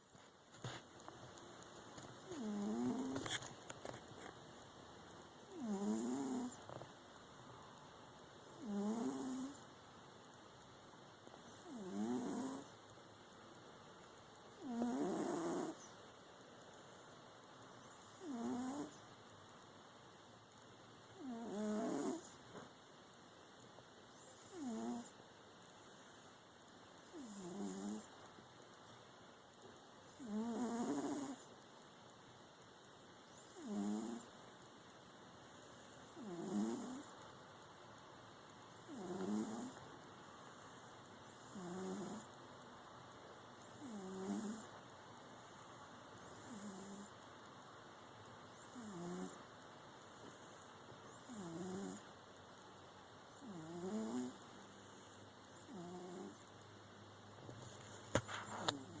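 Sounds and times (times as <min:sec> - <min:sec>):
cat snoring: 0:02.3 - 0:03.4, 0:05.5 - 0:06.8, 0:08.5 - 0:09.6, 0:11.5 - 0:12.8, 0:14.6 - 0:15.8, 0:18.0 - 0:19.0, 0:21.2 - 0:22.4, 0:24.3 - 0:25.2, 0:27.0 - 0:28.2, 0:30.1 - 0:31.5, 0:33.4 - 0:34.3, 0:35.7 - 0:37.1, 0:38.8 - 0:39.8, 0:41.3 - 0:42.3, 0:43.7 - 0:44.7, 0:46.2 - 0:47.1, 0:48.6 - 0:49.4, 0:50.2 - 0:52.1, 0:53.4 - 0:55.0, 0:55.6 - 0:56.5, 0:58.4 - 0:59.0.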